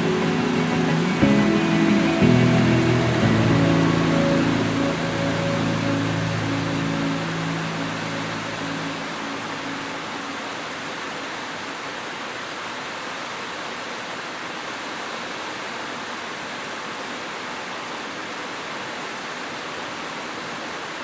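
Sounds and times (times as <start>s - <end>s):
rain falling: 0.0s - 11.8s.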